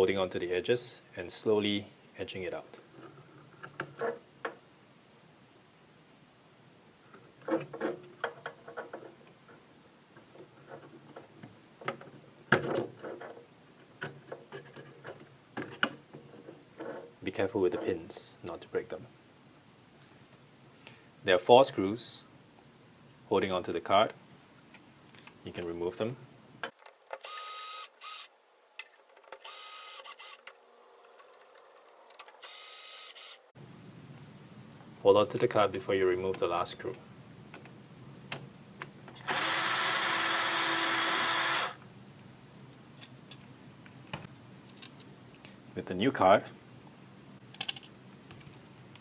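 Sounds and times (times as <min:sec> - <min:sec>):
electric screwdriver whine: 0:27.2 - 0:28.3, 0:29.4 - 0:30.5, 0:32.4 - 0:33.4, 0:39.2 - 0:41.8.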